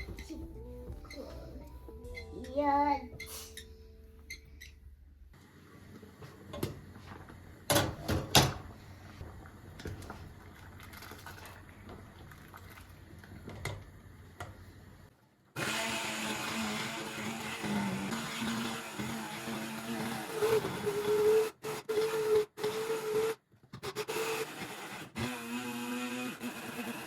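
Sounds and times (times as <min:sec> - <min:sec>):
appliance motor humming: 0:15.6 - 0:23.4, 0:24.0 - 0:27.0.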